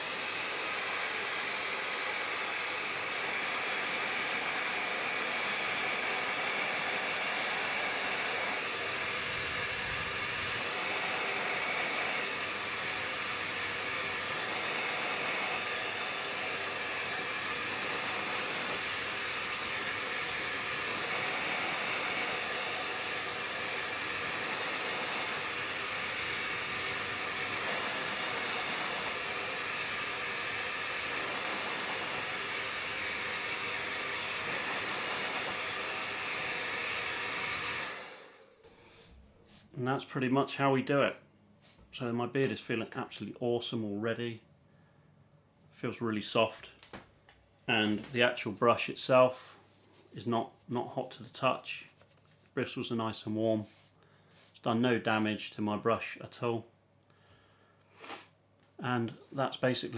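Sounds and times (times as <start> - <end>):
hairdryer blowing: 0.0 - 39.7, 58.0 - 58.2.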